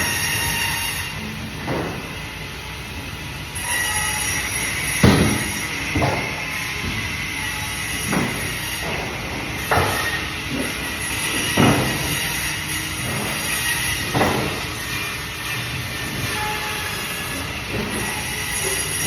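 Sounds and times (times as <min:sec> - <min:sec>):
sharp knocks: 0:05.0 - 0:07.0, 0:08.0 - 0:15.0.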